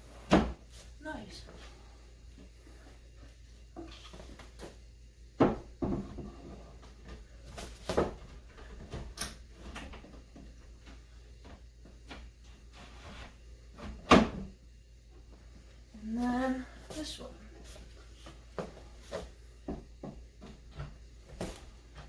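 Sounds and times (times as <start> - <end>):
wooden knocks and bumps: 5.4 - 6.5.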